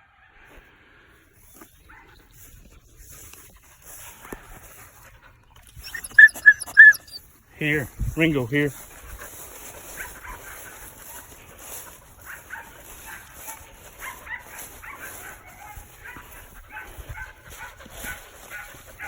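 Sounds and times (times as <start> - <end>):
dog barking and yipping: 5.8 - 7.2, 9.9 - 11.3, 12.2 - 19.0.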